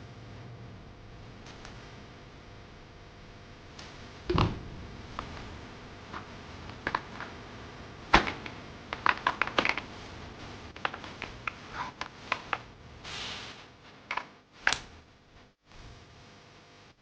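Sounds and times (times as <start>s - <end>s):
short hiss: 13.0s - 13.7s.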